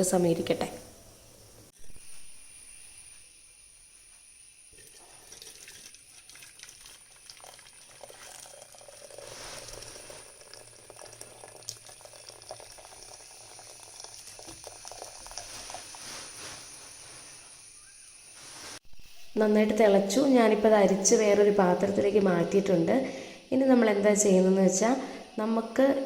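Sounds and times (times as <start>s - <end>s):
pot of water boiling: 3.1s - 17.7s.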